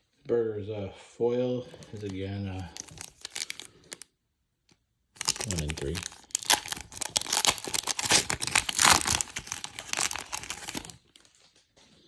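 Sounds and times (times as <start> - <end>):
foil wrapper crinkling and tearing: 1.8 - 4.0, 5.2 - 11.6.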